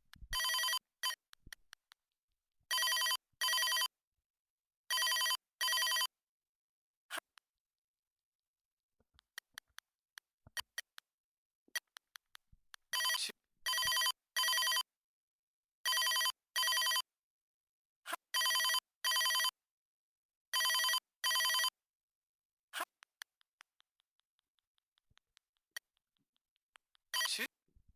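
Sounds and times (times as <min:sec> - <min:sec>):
toy telephone electronic ring: 0:00.4 - 0:00.8, 0:02.7 - 0:03.9, 0:04.9 - 0:06.1, 0:13.0 - 0:14.9, 0:15.9 - 0:17.0, 0:18.4 - 0:19.6, 0:20.6 - 0:21.7.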